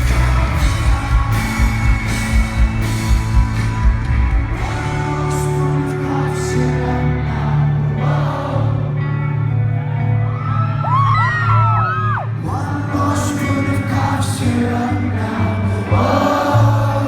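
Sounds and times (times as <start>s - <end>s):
live rock band with vocals: 0.0s - 17.0s
audience whooping and whistling: 1.6s - 5.0s, 10.1s - 12.3s.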